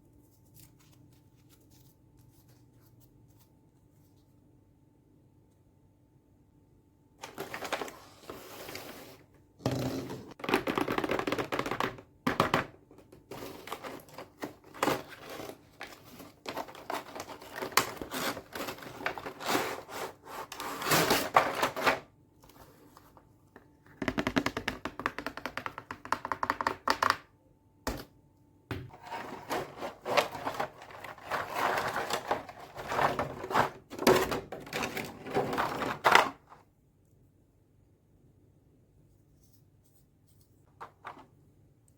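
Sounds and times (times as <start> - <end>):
plastic packaging clicking and crackling: 10.4 - 19.5.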